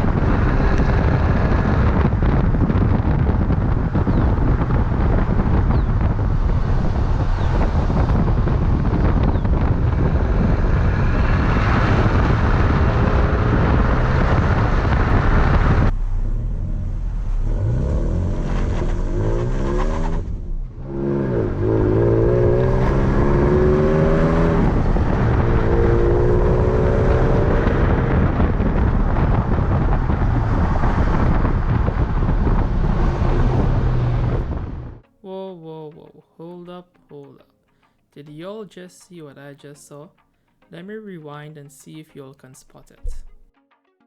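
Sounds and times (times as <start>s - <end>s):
truck engine revving: 0.0s - 35.0s
wind-like noise: 0.0s - 35.1s.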